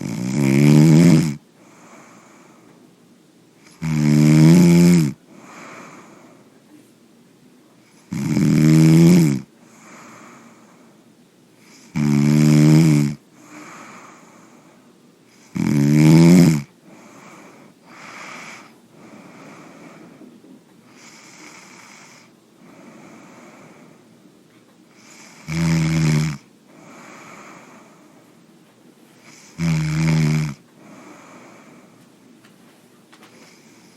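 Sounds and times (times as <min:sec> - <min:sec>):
person snoring loudly: 0:00.0 - 0:02.0, 0:03.7 - 0:06.1, 0:08.1 - 0:10.3, 0:11.7 - 0:14.2, 0:15.4 - 0:18.7, 0:25.0 - 0:27.8, 0:29.3 - 0:31.6
soft breathing: 0:01.5 - 0:03.0, 0:05.2 - 0:07.1, 0:09.6 - 0:12.0, 0:13.3 - 0:15.5, 0:16.7 - 0:25.5, 0:26.6 - 0:29.6, 0:30.6 - 0:33.9.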